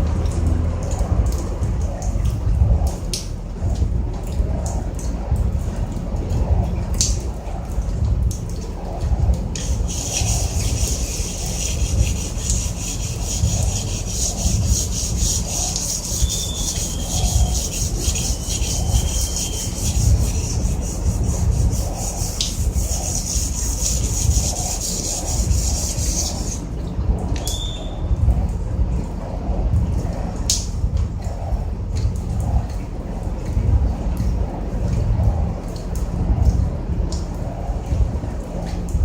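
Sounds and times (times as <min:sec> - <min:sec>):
steady low rumble: 0:00.0 - 0:39.0
rubbing strokes on metal surface: 0:09.6 - 0:26.6.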